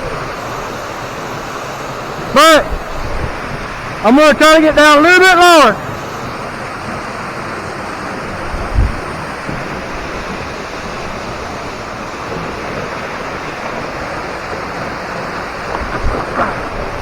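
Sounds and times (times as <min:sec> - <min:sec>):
waterfall pouring: 0:00.0 - 0:17.0
wind bumps on microphone: 0:02.3 - 0:05.0, 0:08.2 - 0:17.0.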